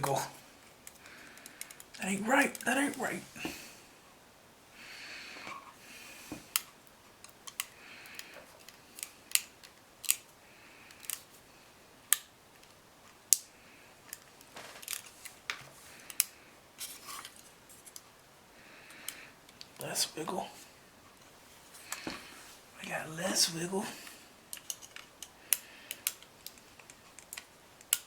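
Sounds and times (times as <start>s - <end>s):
plastic model parts clicking: 6.5s - 10.3s, 10.9s - 11.3s, 14.1s - 15.4s, 16.1s - 16.3s, 24.5s - 28.0s
parts scraping and rustling: 14.1s - 18.0s.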